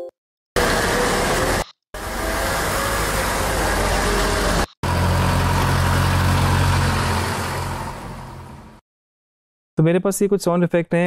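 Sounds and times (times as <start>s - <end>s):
car engine humming: 0.6s - 8.8s
car noise: 0.6s - 8.8s.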